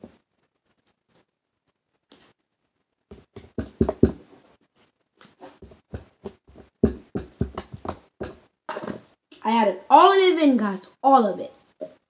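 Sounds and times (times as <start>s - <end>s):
plastic container knocking: 3.1s - 4.2s, 5.6s - 9.0s.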